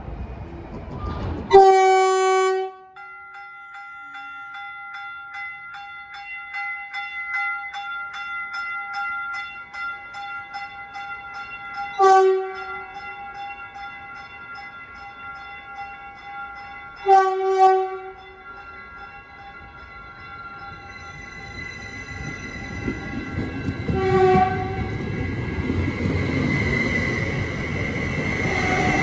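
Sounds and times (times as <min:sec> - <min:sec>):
train horn blast: 0:01.5 - 0:03.0, 0:12.0 - 0:12.8, 0:17.0 - 0:18.2, 0:23.9 - 0:24.9
train bell ringing: 0:02.5 - 0:29.0.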